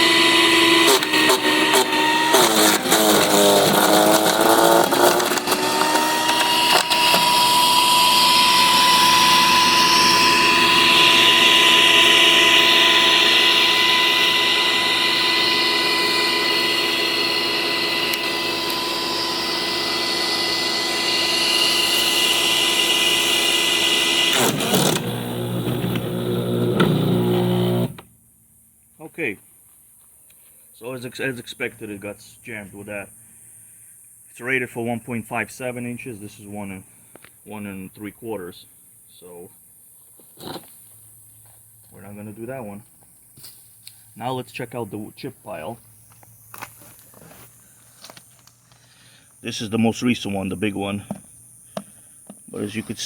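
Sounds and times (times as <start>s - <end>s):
electric chipper motor whining: 0.0s - 28.1s.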